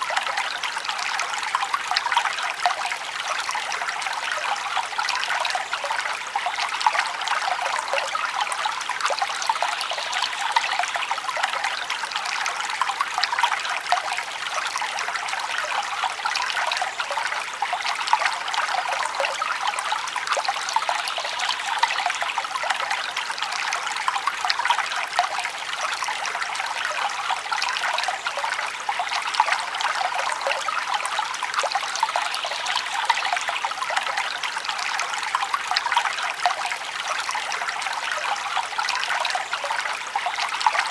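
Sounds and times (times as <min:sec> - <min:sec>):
stream water rushing and gurgling: 0:00.0 - 0:40.9.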